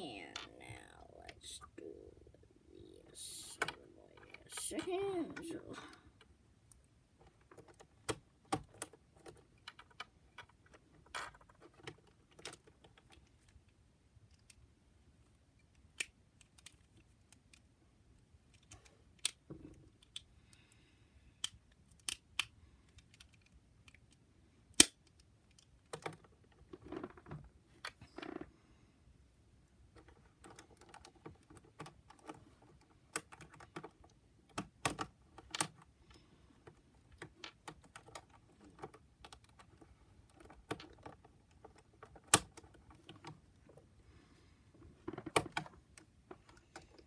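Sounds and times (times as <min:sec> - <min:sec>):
plastic puzzle cube pieces clicking: 0:15.6 - 0:17.7, 0:18.4 - 0:20.6, 0:21.4 - 0:24.2, 0:24.8 - 0:27.2.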